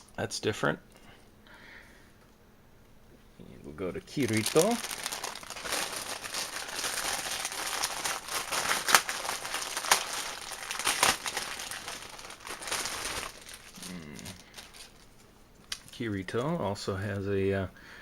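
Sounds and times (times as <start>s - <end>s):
packaging crinkling: 4.0s - 16.5s.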